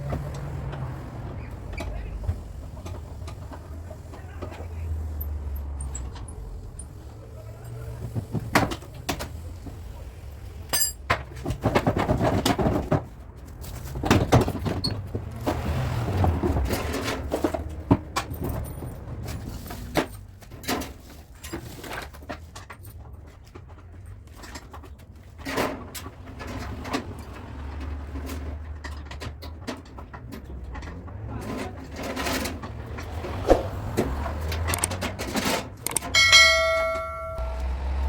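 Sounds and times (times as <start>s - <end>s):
tools knocking and clinking: 10.7s - 11.3s, 34.6s - 37.5s.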